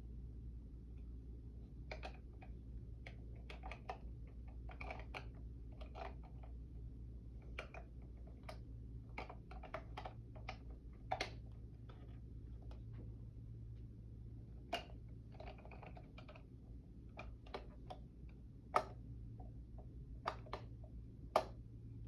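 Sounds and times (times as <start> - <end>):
low steady hum: 0.0 - 22.0
light clicks and taps: 17.1 - 21.6.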